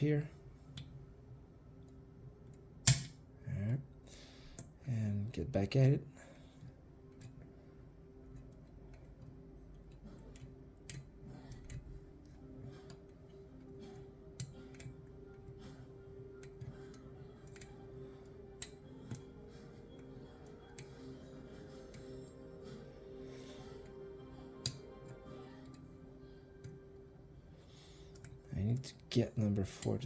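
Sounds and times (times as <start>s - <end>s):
lock pick metallic clicks: 2.8s - 3.2s.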